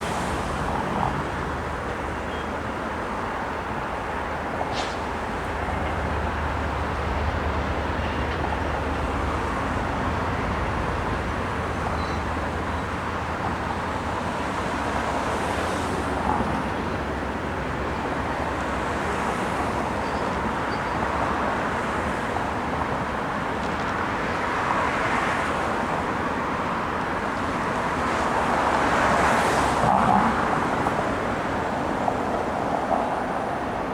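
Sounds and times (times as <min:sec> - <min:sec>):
passing vehicles roaring: 0:00.0 - 0:33.9
faint short squeaks: 0:20.0 - 0:21.1.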